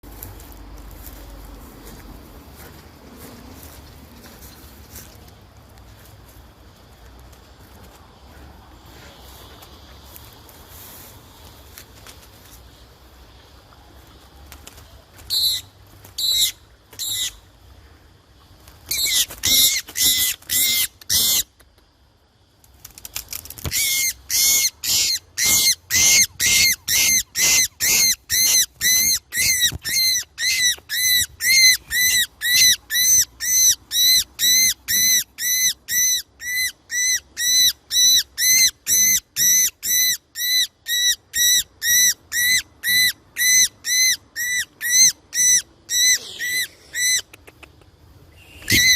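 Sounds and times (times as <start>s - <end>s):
bird calling loudly: 23.7s - 47.3s, 48.4s - 48.9s.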